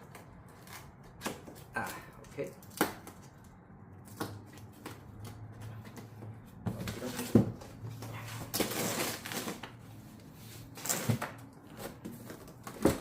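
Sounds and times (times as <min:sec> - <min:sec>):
packaging rustling and sliding: 0:06.6 - 0:13.0.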